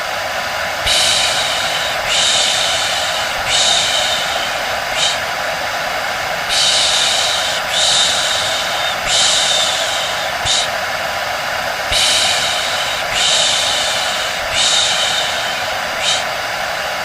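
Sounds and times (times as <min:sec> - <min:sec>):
hair dryer whirring: 0:00.0 - 0:17.0
person shushing: 0:00.8 - 0:05.5, 0:06.4 - 0:10.8, 0:11.9 - 0:16.4.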